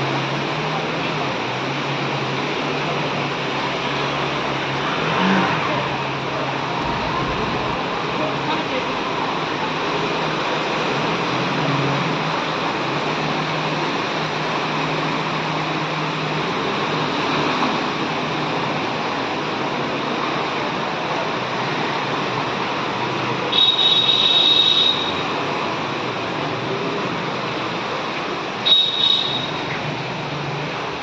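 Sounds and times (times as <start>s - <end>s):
floodwater rushing: 0.0s - 23.5s.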